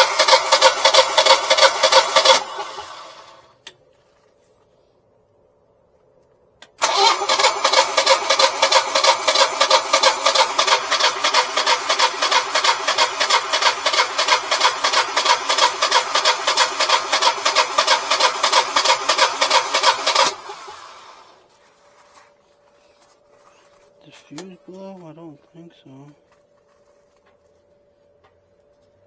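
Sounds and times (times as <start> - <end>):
generator starter cranking engine: 0.0 - 3.7, 6.7 - 21.5.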